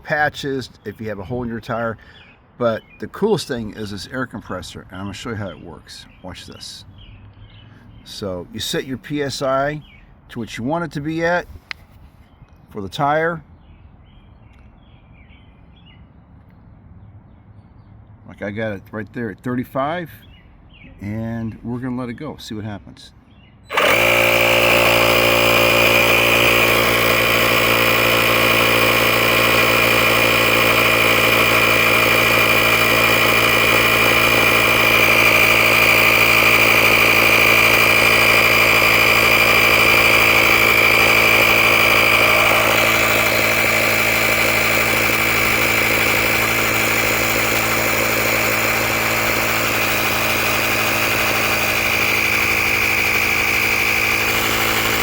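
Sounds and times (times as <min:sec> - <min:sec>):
air compressor whining: 0:00.0 - 0:00.3, 0:23.7 - 0:55.0.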